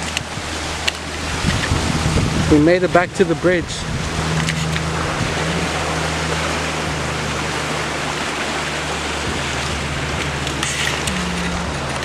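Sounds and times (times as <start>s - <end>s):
flowing water rushing: 0.0s - 12.0s
low steady hum: 0.0s - 12.0s.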